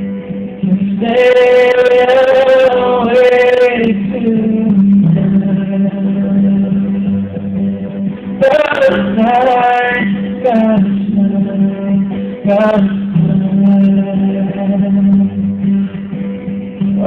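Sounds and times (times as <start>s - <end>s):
acoustic guitar playing: 0.0s - 17.0s
man singing: 0.6s - 7.2s, 8.3s - 16.0s.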